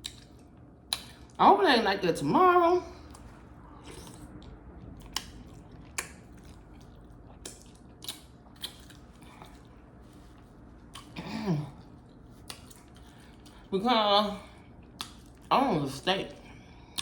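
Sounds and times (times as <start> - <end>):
close chewing with mouth smacks: 0.0 - 1.4, 3.0 - 13.7, 14.5 - 15.5.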